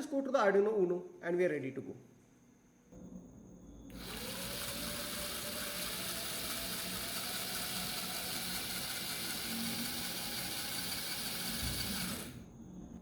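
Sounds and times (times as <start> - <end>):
small electric motor whirring: 3.9 - 12.5.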